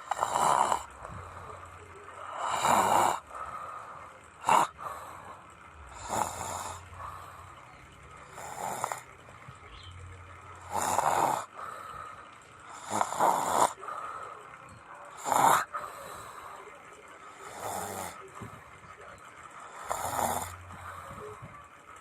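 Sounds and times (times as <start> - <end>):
person snoring: 0.0 - 7.4, 8.2 - 9.1, 10.6 - 11.6, 12.7 - 14.0, 15.2 - 16.6, 17.4 - 18.4, 19.6 - 21.4.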